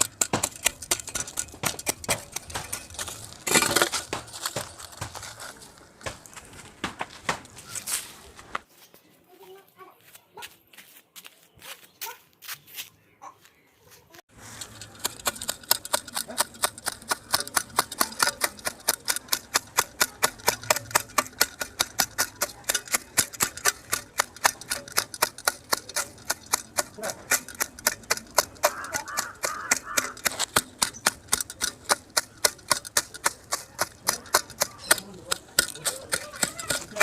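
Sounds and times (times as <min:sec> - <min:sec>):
hoe chopping at ground: 0:00.0 - 0:08.4, 0:14.3 - 0:37.0.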